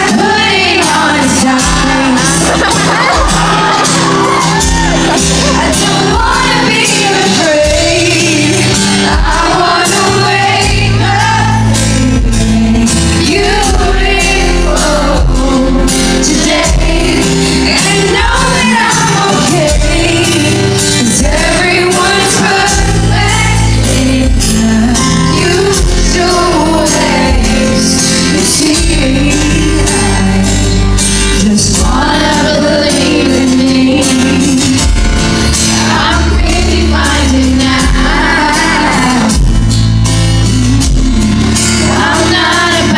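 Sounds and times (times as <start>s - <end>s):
live pop band playing: 0.0s - 42.9s
woman singing lead: 0.0s - 42.9s.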